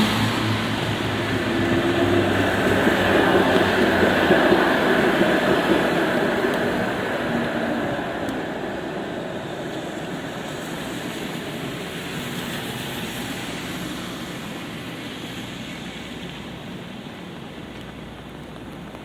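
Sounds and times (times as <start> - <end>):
passing vehicle rumble: 0.0 - 14.4
light rain falling: 0.0 - 19.0.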